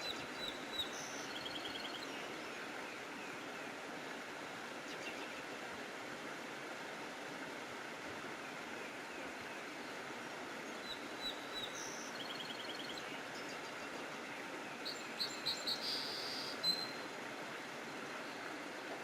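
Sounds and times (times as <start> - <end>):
songbirds calling: 0.0 - 3.5, 8.9 - 17.1
steady hiss: 0.0 - 19.0.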